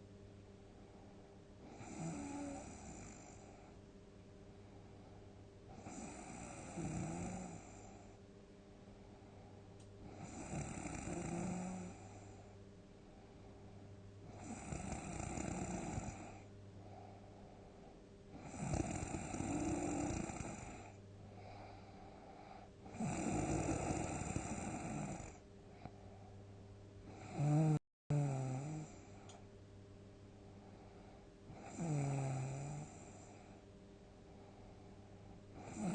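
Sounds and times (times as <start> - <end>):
quiet breaths: 0.0 - 35.9
person snoring loudly: 1.6 - 3.4, 5.8 - 8.0, 10.1 - 12.1, 14.3 - 16.4, 18.4 - 21.0, 22.9 - 25.4, 27.1 - 29.0, 31.5 - 33.2, 35.6 - 35.9.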